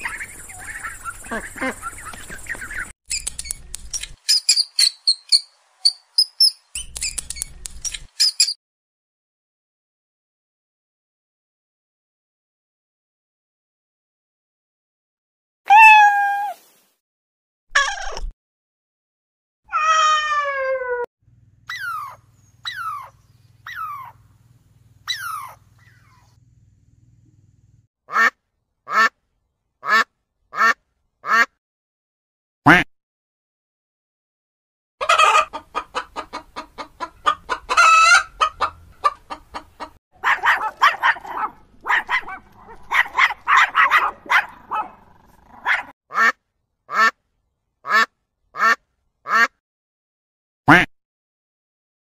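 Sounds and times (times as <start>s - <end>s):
small animal chirping: 3.1s - 8.6s, 21.7s - 24.2s, 25.0s - 26.3s
low background hum: 21.3s - 27.9s.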